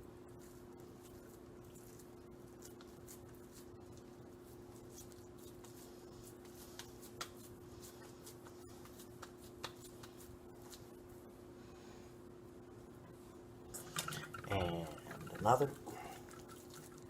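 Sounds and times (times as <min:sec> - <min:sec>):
steady low hum: 0:00.0 - 0:17.0
hands squishing raw meat: 0:00.2 - 0:11.0, 0:14.5 - 0:17.0.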